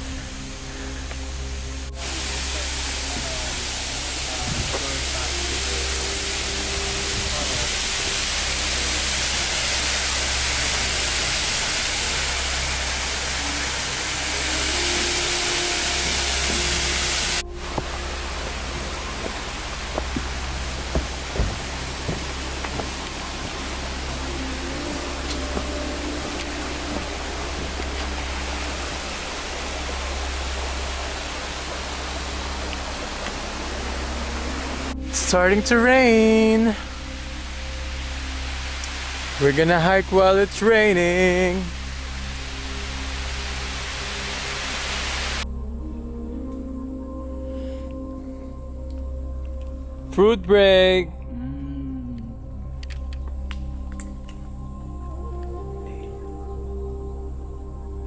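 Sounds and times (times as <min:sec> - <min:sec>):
rain falling: 0:00.0 - 0:47.1
steady rushing hiss: 0:00.0 - 0:50.2, 0:52.4 - 0:58.0
low rumble: 0:00.0 - 0:58.0.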